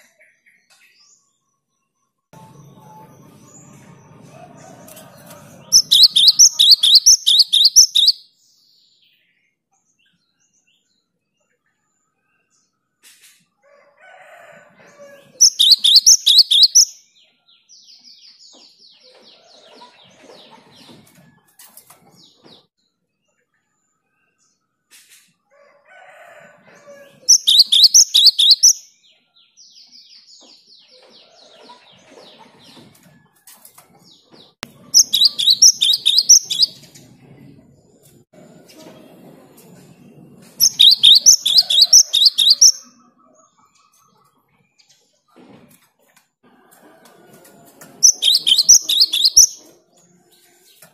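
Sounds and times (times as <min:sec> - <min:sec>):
bird singing rapid high notes: 0:05.6 - 0:08.3, 0:15.4 - 0:17.0, 0:27.3 - 0:28.9, 0:35.0 - 0:36.8, 0:40.6 - 0:42.9, 0:48.0 - 0:49.6.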